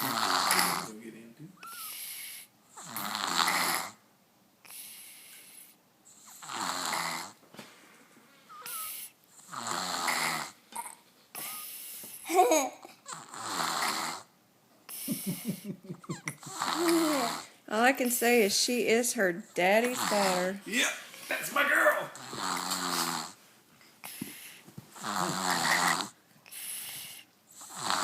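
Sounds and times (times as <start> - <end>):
baby snoring: 0.0 - 1.0, 1.6 - 4.0, 4.6 - 7.4, 8.5 - 12.0, 13.0 - 14.3, 14.9 - 17.6, 19.8 - 20.6, 22.2 - 23.4, 24.0 - 28.0
quiet breaths: 4.6 - 6.6, 7.3 - 9.6, 11.3 - 12.3, 22.2 - 28.0.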